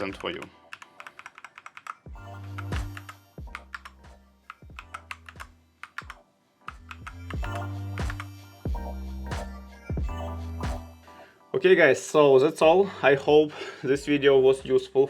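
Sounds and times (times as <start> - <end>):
background music with bass notes: 0.0 - 0.5, 2.1 - 15.0
mechanical keyboard clicks: 0.0 - 2.0, 2.8 - 7.4.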